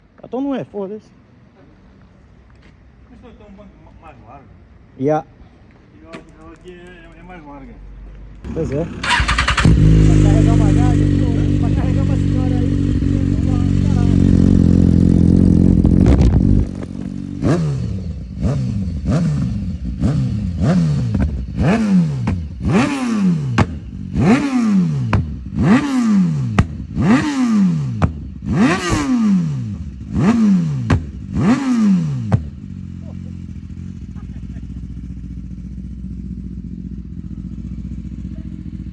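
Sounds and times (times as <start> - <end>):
motorcycle engine revving: 8.5 - 38.9.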